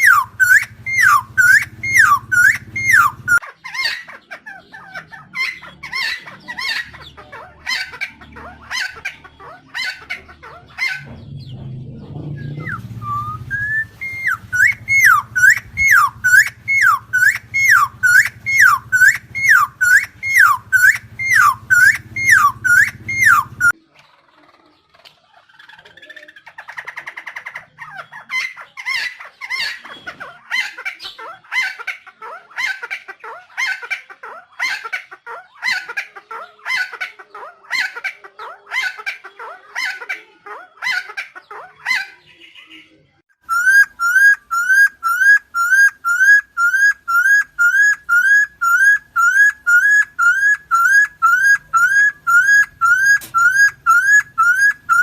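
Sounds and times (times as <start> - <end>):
bird rising whistled notes: 0.0 - 3.4, 12.3 - 23.8, 43.5 - 55.0
bird harsh repeated calls: 0.0 - 11.6, 12.2 - 23.8, 25.8 - 55.0.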